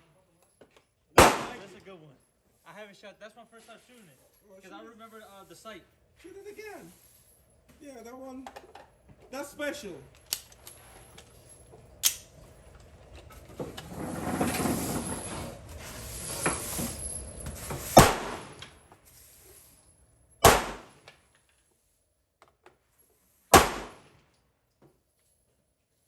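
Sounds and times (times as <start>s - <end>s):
handgun shots: 1.2s - 1.8s, 18.0s - 18.6s, 20.4s - 21.0s, 23.5s - 24.1s.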